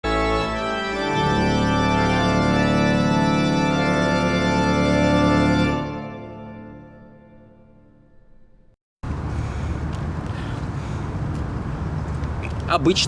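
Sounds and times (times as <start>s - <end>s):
music of long held chords: 0.1s - 8.7s.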